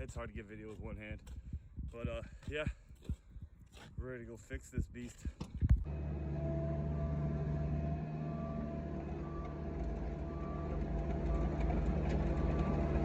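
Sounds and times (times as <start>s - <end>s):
vehicle engine droning: 5.8s - 13.0s.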